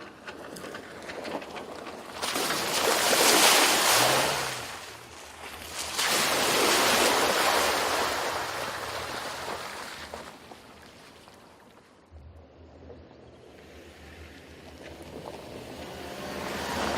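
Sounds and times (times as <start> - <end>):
rushing noise of car off-road: 0.0 - 11.0, 12.1 - 16.9
faint engine hum: 12.1 - 16.9.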